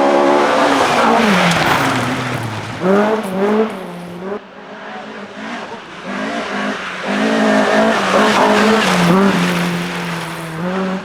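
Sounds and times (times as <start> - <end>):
rally car engine revving: 0.0 - 11.0.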